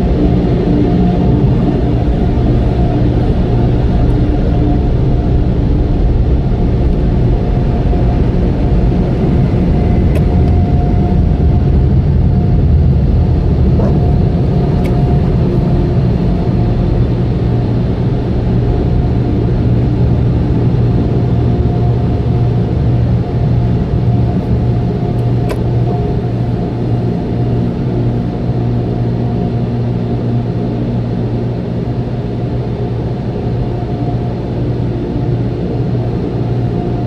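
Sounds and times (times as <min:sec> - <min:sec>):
car wash machinery rumble: 0:00.0 - 0:37.0
faint whine: 0:00.0 - 0:37.0.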